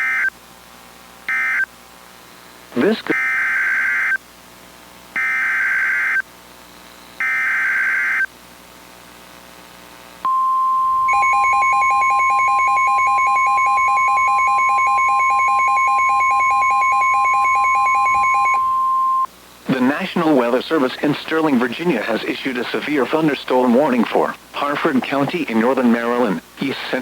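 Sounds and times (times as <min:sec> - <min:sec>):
rapid beeping alarm: 0:10.3 - 0:19.3
steady alert tone: 0:10.3 - 0:19.3
warbling data bursts: 0:10.8 - 0:27.0.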